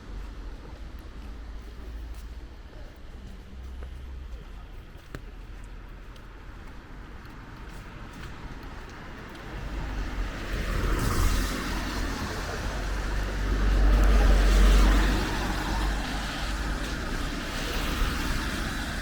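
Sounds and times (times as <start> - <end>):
engine rumble: 0.0 - 19.0
tyre hiss on wet road: 9.7 - 19.0.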